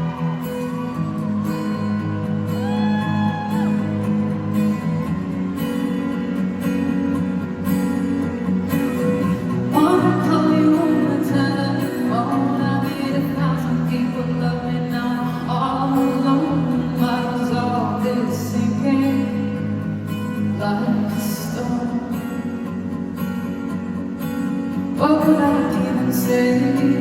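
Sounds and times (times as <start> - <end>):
strummed acoustic guitar: 0.0 - 27.0
person singing: 9.7 - 19.6, 25.0 - 27.0.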